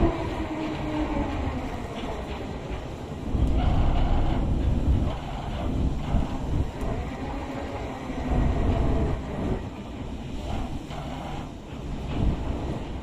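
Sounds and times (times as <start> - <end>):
low rumble with rattling: 0.0 - 13.0.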